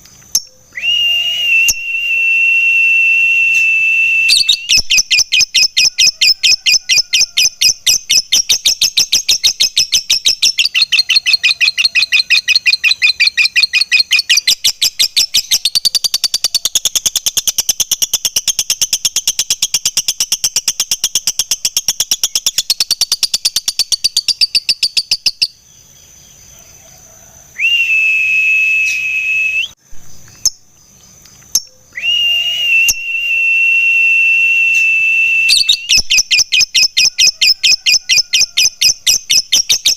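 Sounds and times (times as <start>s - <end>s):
lovebird chattering trill: 4.3s - 25.6s, 35.5s - 39.9s.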